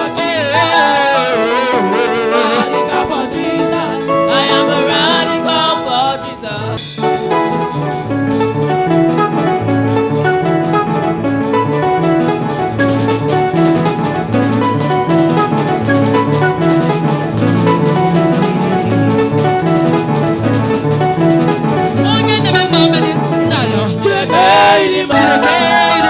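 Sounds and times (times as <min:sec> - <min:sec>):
person singing: 0:00.0 - 0:06.8, 0:16.3 - 0:19.7, 0:22.0 - 0:26.0
guitar: 0:00.0 - 0:26.0
drums: 0:06.8 - 0:22.1.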